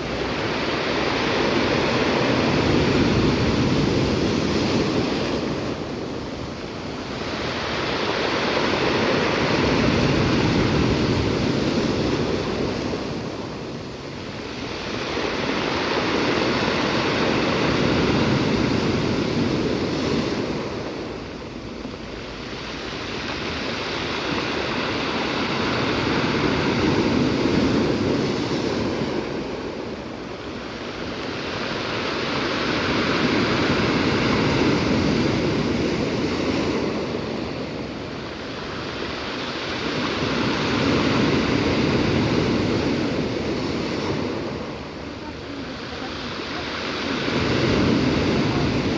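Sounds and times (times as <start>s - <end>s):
waves breaking on shore: 0.0s - 48.9s.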